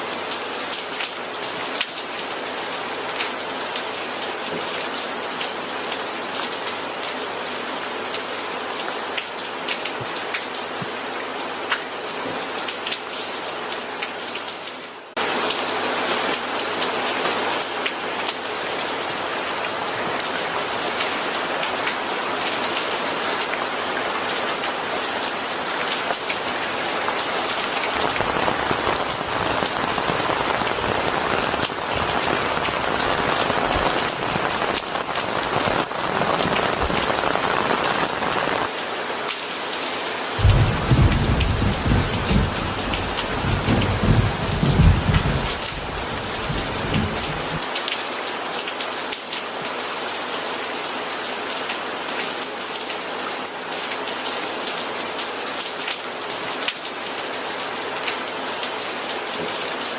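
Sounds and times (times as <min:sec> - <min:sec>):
heavy rain pattering: 0:00.0 - 0:59.9
thunder burst: 0:27.9 - 0:38.6, 0:40.4 - 0:47.6.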